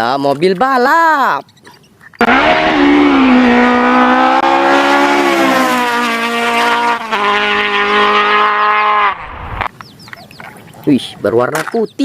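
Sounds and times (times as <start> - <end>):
race car engine: 2.2 - 9.7.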